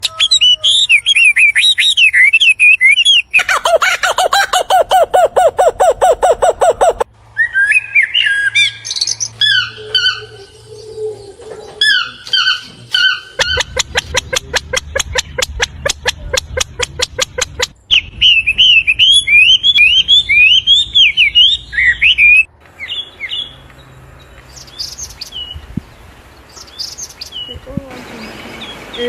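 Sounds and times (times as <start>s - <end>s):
whistled bird calls: 0.0s - 4.0s, 5.9s - 16.2s, 17.0s - 23.6s
birds warbling and chirping: 0.0s - 29.0s
bird rapid repeated notes: 3.7s - 7.1s, 12.2s - 21.0s.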